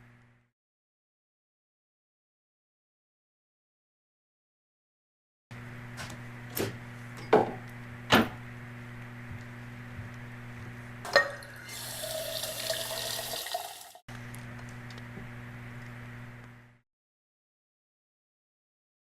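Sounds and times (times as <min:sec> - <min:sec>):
low electrical hum: 0:00.0 - 0:00.5, 0:05.6 - 0:16.8
tap water running: 0:11.1 - 0:14.0.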